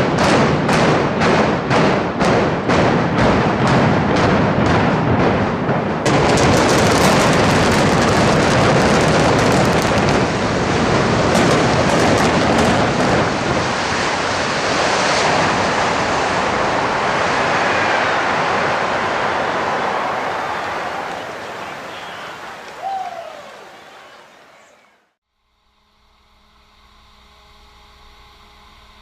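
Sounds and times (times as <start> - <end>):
building collapsing roar: 0.0 - 21.8
demolition charges firing: 0.0 - 22.7.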